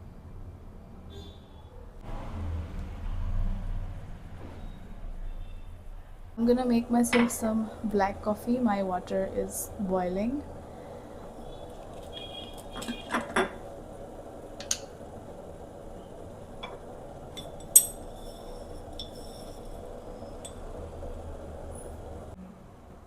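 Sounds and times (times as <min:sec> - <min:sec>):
crockery and cutlery clinking: 0:07.1 - 0:07.5, 0:16.6 - 0:20.7.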